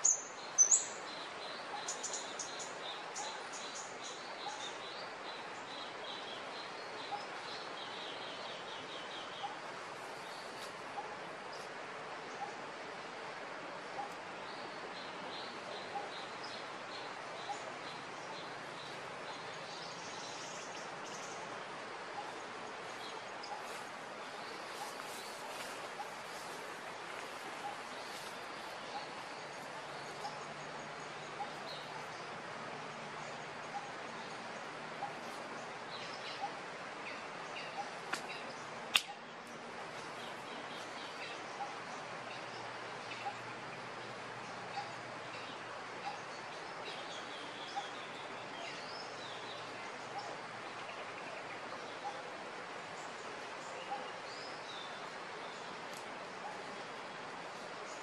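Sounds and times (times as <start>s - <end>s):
steady outdoor hiss: 0.0s - 58.0s
sharp click: 38.9s - 39.2s.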